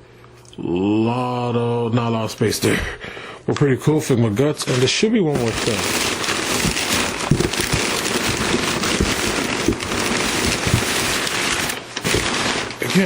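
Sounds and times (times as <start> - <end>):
packing material crinkling: 4.6 - 13.0.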